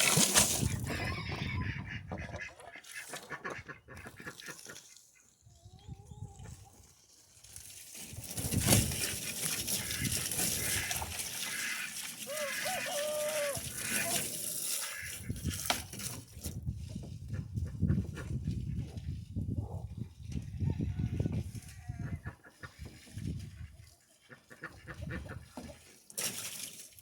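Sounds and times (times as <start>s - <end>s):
farm animal calls: 0.6s - 5.3s, 9.7s - 15.3s.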